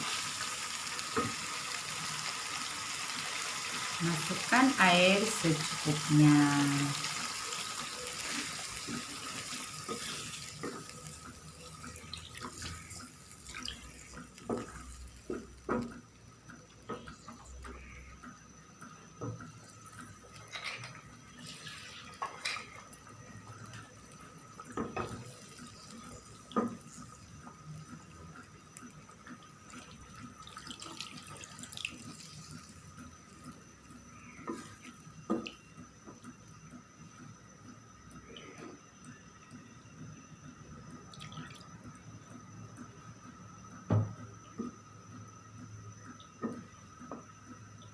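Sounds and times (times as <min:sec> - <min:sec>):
water pouring into pot: 0:00.0 - 0:15.8, 0:19.8 - 0:33.5.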